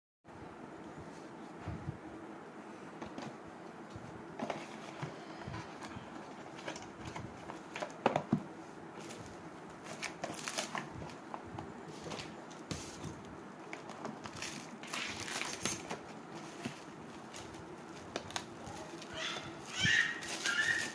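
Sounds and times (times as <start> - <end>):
faint steady hum: 0.3 - 20.9
rustling of small objects: 11.9 - 20.9.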